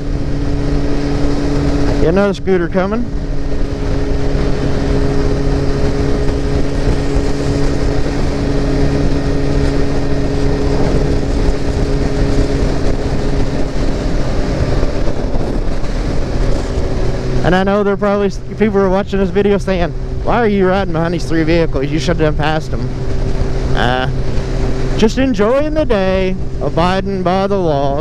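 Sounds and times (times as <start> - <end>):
motorcycle engine cruising: 0.0 - 28.0
wind and road noise: 0.0 - 28.0.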